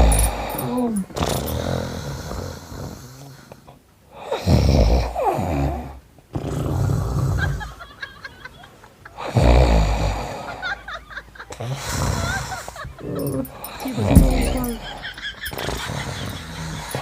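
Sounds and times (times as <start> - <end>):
man fake-snoring: 0.0 - 7.7, 9.2 - 10.6, 11.6 - 14.8.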